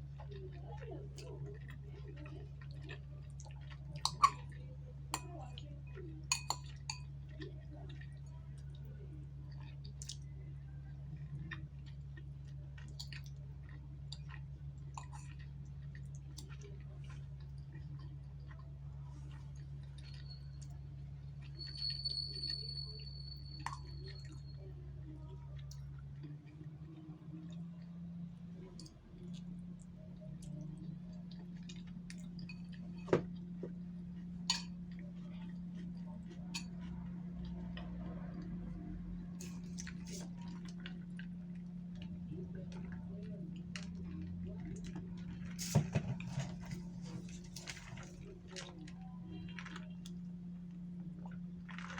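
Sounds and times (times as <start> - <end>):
mouth chewing food: 0.0 - 51.9
steady low hum: 0.0 - 51.9
utensils clinking against a dish: 4.0 - 4.5, 6.3 - 7.1, 34.5 - 34.8.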